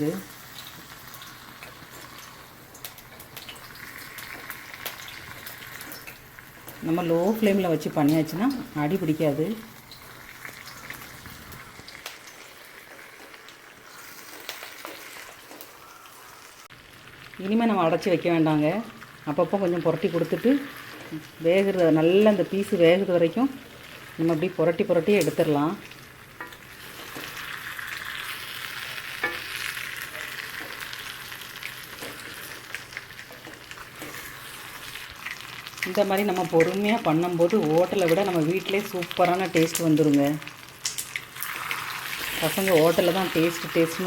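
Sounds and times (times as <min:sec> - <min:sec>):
chicken sizzling in a pan: 0:00.0 - 0:44.0
small pops and clicks of oil: 0:40.8 - 0:41.5.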